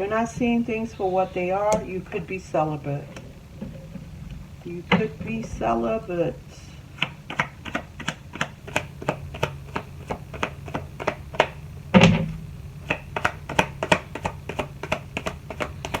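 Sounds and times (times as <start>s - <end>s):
low hum: 0.0s - 16.0s
steady ticking: 0.0s - 16.0s
loud thump: 11.6s - 13.1s.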